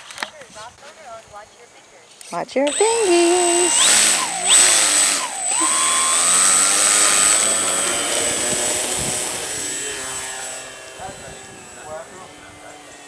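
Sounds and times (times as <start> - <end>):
model plane motor whine: 2.1 - 13.0.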